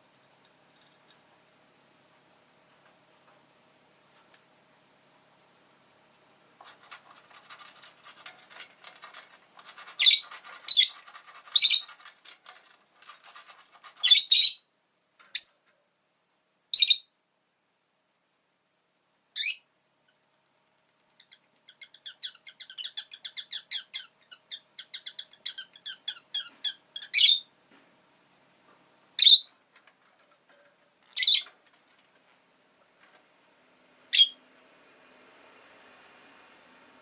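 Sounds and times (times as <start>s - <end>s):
lovebirds chattering chirps: 9.8s - 12.1s, 13.9s - 14.7s, 21.2s - 27.5s, 29.2s - 29.5s, 31.2s - 31.5s
lovebird shrieking calls: 14.0s - 14.6s.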